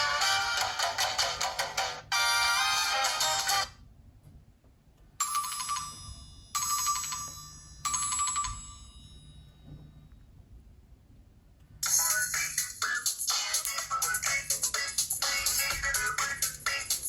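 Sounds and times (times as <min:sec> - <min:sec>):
bell-like ringtone chime: 0:05.2 - 0:09.7.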